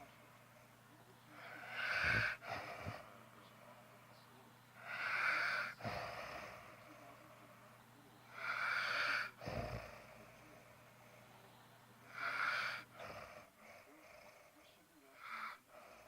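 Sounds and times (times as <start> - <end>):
rasping snoring breaths: 1.3 - 3.2, 4.8 - 7.3, 8.3 - 11.3, 12.1 - 16.0.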